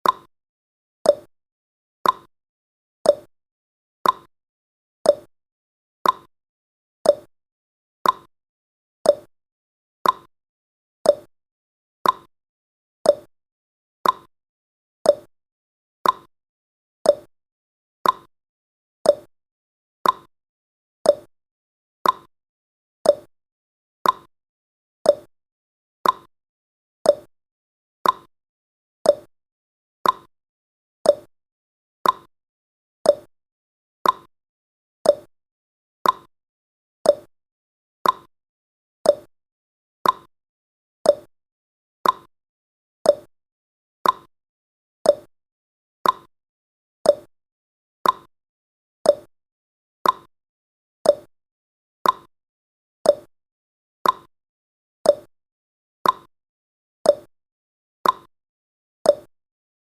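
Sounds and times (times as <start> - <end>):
clock-like timer ticking: 0.0 - 0.3, 2.0 - 2.3, 4.0 - 4.3, 6.0 - 6.3, 8.0 - 8.3, 10.0 - 10.3, 12.0 - 12.3, 14.0 - 14.3, 16.0 - 16.3, 17.1 - 17.3, 18.0 - 18.3, 19.1 - 19.3, 20.0 - 20.3, 21.1 - 21.3, 22.0 - 22.3, 23.1 - 23.3, 24.0 - 24.3, 25.1 - 25.3, 26.0 - 26.3, 27.1 - 27.3, 28.0 - 28.3, 29.1 - 29.3, 30.0 - 30.3, 31.1 - 31.3, 32.0 - 32.3, 33.1 - 33.3, 34.0 - 34.3, 35.1 - 35.3, 36.0 - 36.3, 37.1 - 37.3, 38.0 - 38.3, 39.1 - 39.3, 40.0 - 40.3, 41.1 - 41.3, 42.0 - 42.3, 43.1 - 43.3, 44.0 - 44.3, 45.1 - 45.3, 46.0 - 46.3, 47.1 - 47.3, 48.0 - 48.3, 49.1 - 49.3, 50.0 - 50.3, 51.1 - 51.3, 52.0 - 52.3, 53.1 - 53.3, 54.0 - 54.3, 55.1 - 55.3, 56.0 - 56.3, 57.1 - 57.3, 58.0 - 58.3, 59.1 - 59.3.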